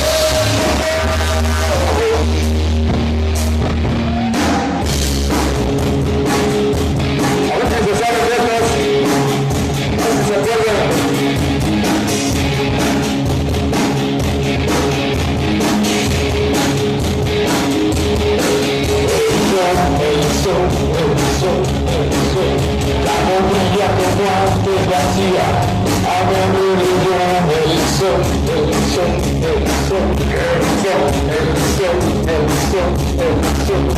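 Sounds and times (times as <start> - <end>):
person singing: 0.0 - 2.6, 18.6 - 33.9
drum kit: 0.0 - 33.9
electric guitars: 0.0 - 33.9.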